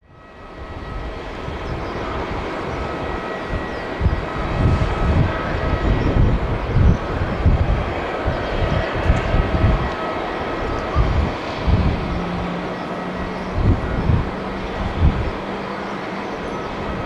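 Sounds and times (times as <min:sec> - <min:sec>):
jet engines roaring: 0:00.0 - 0:17.0
low rumbles: 0:03.5 - 0:15.4.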